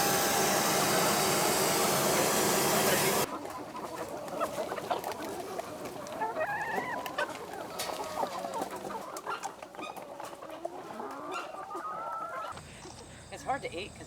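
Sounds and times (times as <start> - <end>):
hens clucking: 1.8 - 12.6.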